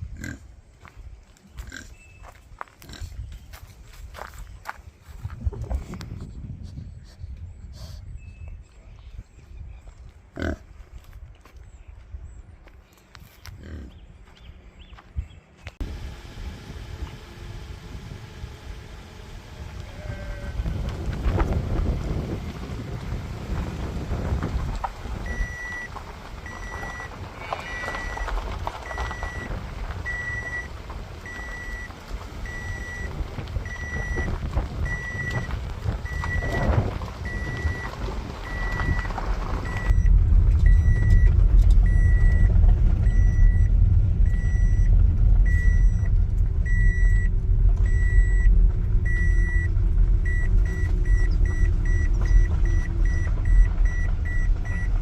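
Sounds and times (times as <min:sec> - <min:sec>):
vehicle noise: 0:00.0 - 0:55.0
deep rumble: 0:05.0 - 0:09.8, 0:15.2 - 0:55.0
car warning chime beeping: 0:25.3 - 0:25.9, 0:26.5 - 0:27.1, 0:27.7 - 0:28.3, 0:28.9 - 0:29.5, 0:30.1 - 0:30.7, 0:31.3 - 0:33.1, 0:33.7 - 0:34.3, 0:34.9 - 0:35.5, 0:37.3 - 0:37.9, 0:38.5 - 0:39.1, 0:39.7 - 0:42.5, 0:43.1 - 0:43.7, 0:44.3 - 0:46.1, 0:46.7 - 0:48.5, 0:49.1 - 0:55.0.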